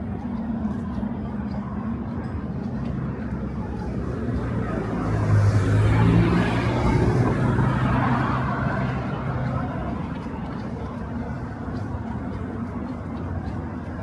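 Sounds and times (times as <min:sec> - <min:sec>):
street noise hum: 0:00.0 - 0:14.0
vehicle engine passing by: 0:04.4 - 0:09.9.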